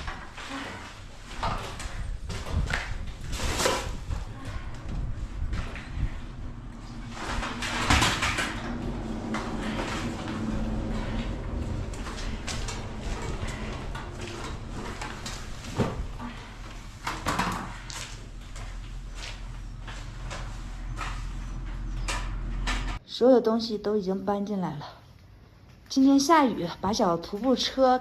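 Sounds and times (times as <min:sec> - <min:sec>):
camping gear knocking and scraping: 0:06.8 - 0:23.0.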